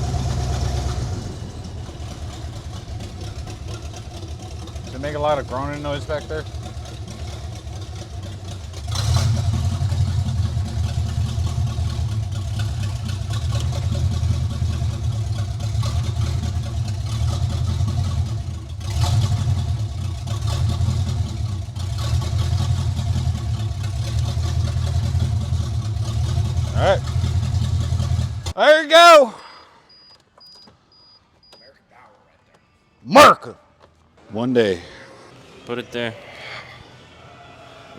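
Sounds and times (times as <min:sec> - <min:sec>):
car engine running under load: 0:00.0 - 0:28.6.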